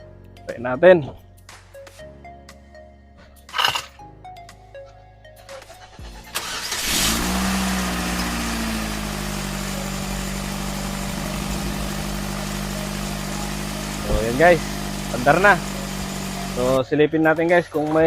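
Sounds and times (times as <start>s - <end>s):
car engine starting and idling: 5.5s - 16.8s.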